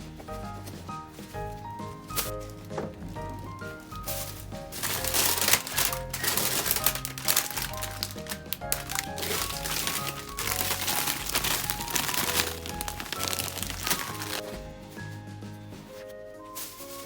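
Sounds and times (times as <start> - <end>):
background music: 0.0 - 17.0
plastic packaging crinkling: 1.5 - 14.6.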